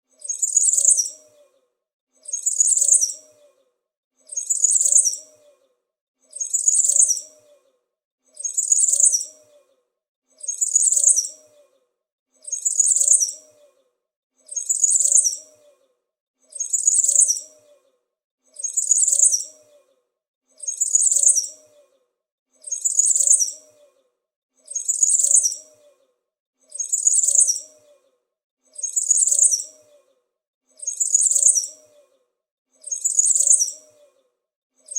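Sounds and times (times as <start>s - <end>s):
small bird chirping: 0.2s - 1.6s, 2.2s - 5.7s, 6.3s - 7.7s, 8.3s - 9.7s, 10.4s - 11.8s, 12.4s - 13.8s, 14.4s - 15.9s, 16.5s - 17.8s, 18.6s - 19.9s, 20.6s - 22.0s, 22.6s - 24.0s, 24.6s - 26.0s, 26.7s - 28.1s, 28.7s - 30.1s, 30.8s - 32.2s, 32.8s - 34.2s.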